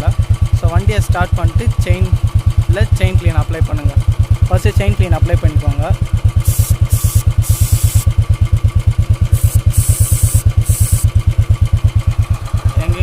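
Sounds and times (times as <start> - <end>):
motorcycle engine thumping: 0.0 - 13.0
aerosol spray hissing: 6.4 - 8.1, 9.3 - 11.2.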